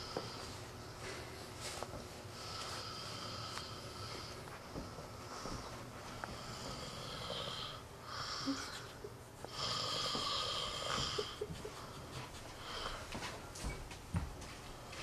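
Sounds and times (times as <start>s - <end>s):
man snoring: 6.4s - 8.8s, 9.5s - 11.4s.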